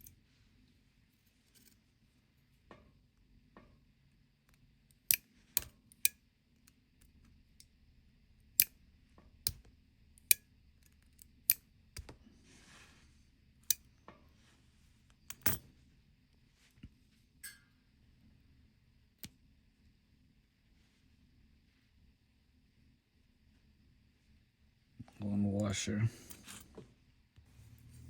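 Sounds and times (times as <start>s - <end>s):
soft rustle: 12.2s - 13.3s, 15.8s - 17.4s, 20.6s - 22.2s
metal tools clicking on watch case: 15.3s - 15.6s.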